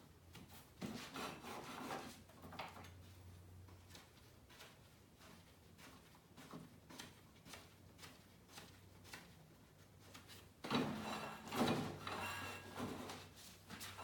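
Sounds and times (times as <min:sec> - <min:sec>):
metal clattering and scraping: 0:10.7 - 0:13.3.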